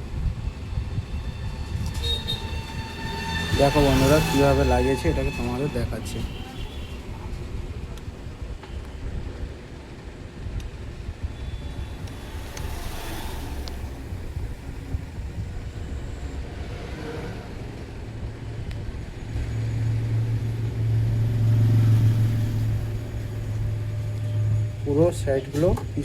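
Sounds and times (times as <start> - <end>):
low rumble: 0.0 - 25.1
steady low hum: 9.0 - 16.5.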